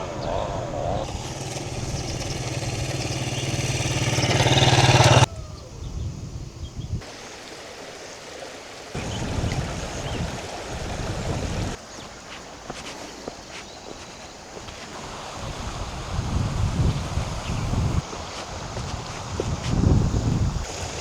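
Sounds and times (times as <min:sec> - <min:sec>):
vehicle engine running: 0:00.0 - 0:05.3
wind on microphone: 0:00.0 - 0:07.1, 0:09.0 - 0:11.8, 0:14.9 - 0:21.0.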